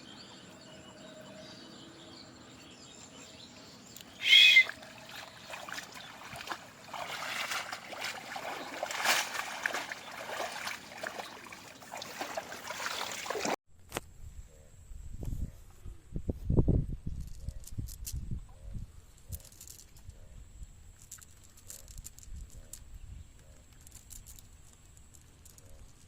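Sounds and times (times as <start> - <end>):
water splashing and trickling: 3.6 - 13.6
short high call: 4.2 - 4.8.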